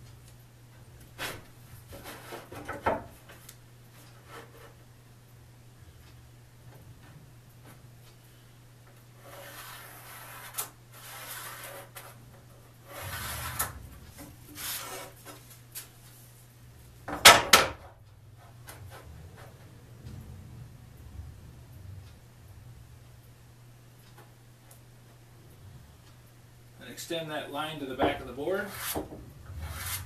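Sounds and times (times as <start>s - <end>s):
scraping across plywood: 9.2s - 12.2s, 12.8s - 15.4s, 28.0s - 30.0s.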